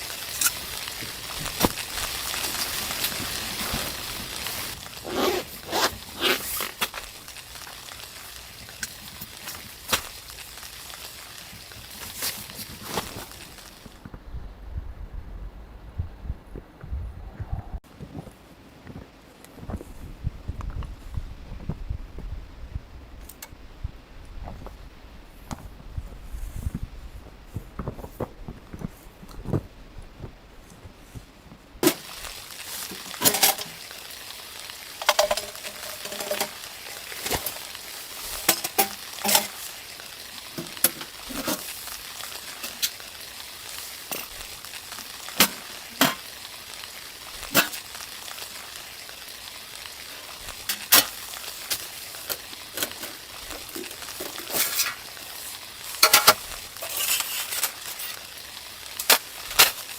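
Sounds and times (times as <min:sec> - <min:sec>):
food sizzling in a pan: 0:00.0 - 0:14.0, 0:31.8 - 0:59.9
spitting pops of frying: 0:00.0 - 0:14.2, 0:31.8 - 0:59.9.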